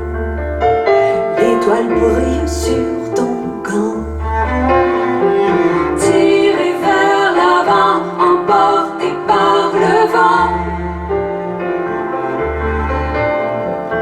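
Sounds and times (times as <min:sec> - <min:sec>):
deep bass notes: 0:00.0 - 0:06.5
bowed strings: 0:00.0 - 0:14.0.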